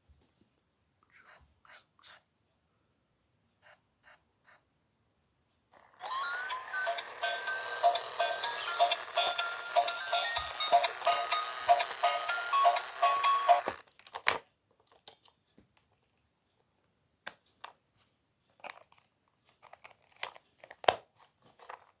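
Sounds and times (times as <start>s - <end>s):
toy car electronic beeping tune: 5.9s - 13.8s.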